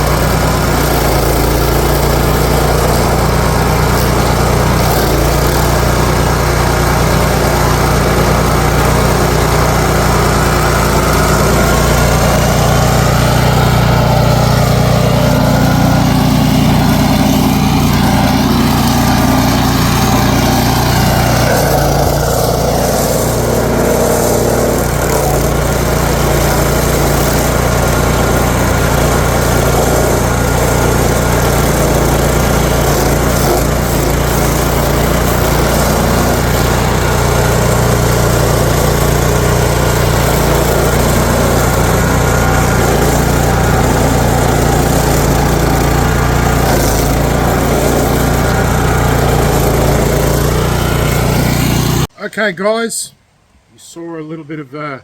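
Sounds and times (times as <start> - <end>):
stump grinder engine running: 0.0 - 52.1.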